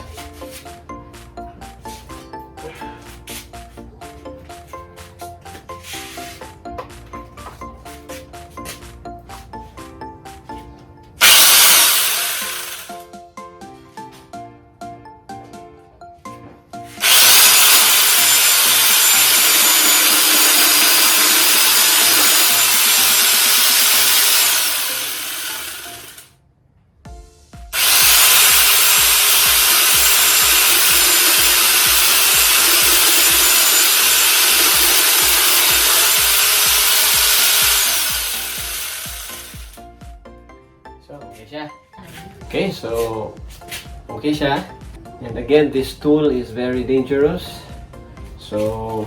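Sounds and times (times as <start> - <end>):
angle grinder cutting wood: 11.2 - 13.0, 16.9 - 26.3, 27.8 - 39.8.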